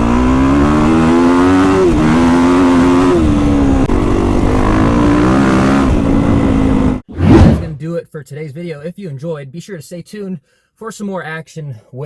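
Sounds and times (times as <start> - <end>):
dirt bike engine revving: 6.6 - 7.8.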